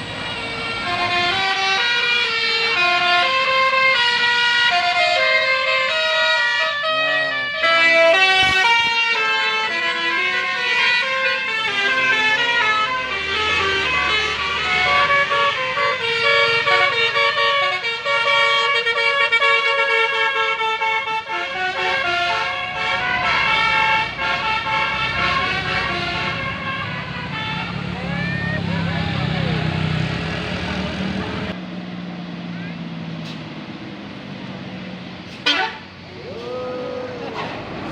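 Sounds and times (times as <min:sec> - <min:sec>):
musical air horn tune: 0:00.3 - 0:27.9, 0:35.4 - 0:35.9.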